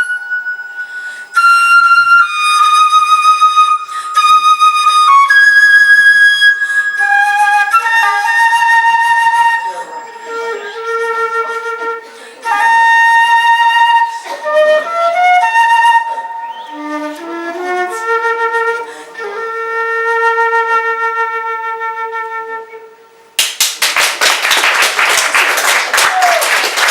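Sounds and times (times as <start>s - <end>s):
flute slow melody: 0.0s - 23.3s
applause: 23.4s - 26.9s.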